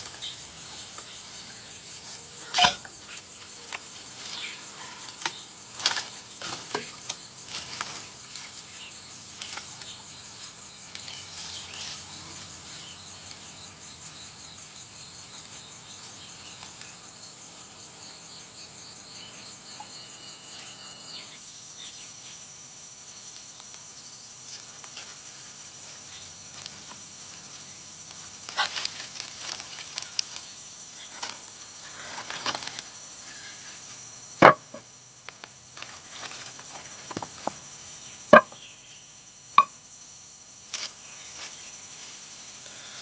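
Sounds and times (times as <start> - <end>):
high insect hum: 0.0 - 43.0
sharp knocks on wood: 34.4 - 34.8
taps and scrapes on wood: 34.4 - 34.8.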